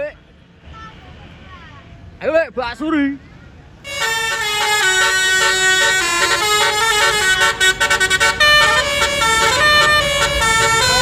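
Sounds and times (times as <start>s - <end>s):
bus musical horn playing a tune: 3.8s - 11.0s.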